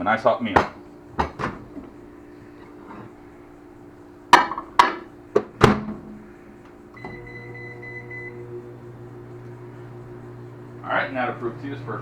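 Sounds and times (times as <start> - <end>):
microwave oven humming: 0.0 - 12.0
sharp knocks and clicks: 4.4 - 6.0
held beep: 7.0 - 8.4.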